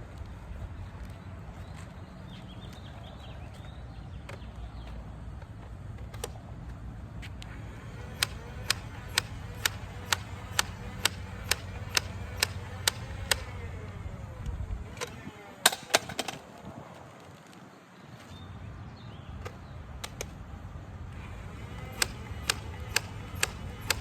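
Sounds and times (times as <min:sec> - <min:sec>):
toy blaster firing clicks: 0:07.6 - 0:16.6, 0:21.5 - 0:24.0.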